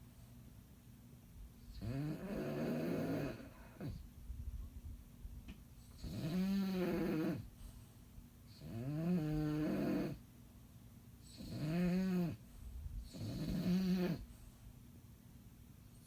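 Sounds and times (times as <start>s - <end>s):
dog snoring: 1.7s - 4.0s, 5.9s - 7.5s, 8.5s - 10.2s, 11.3s - 12.4s, 13.0s - 14.3s.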